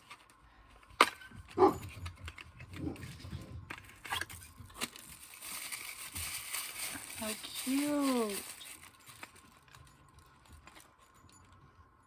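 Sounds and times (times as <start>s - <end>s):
soft rustling: 1.6s - 11.8s.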